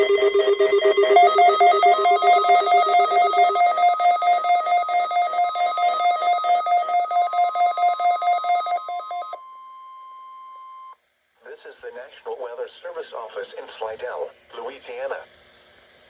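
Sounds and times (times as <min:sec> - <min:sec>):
electronic alarm beeping rapidly: 0:00.0 - 0:09.4.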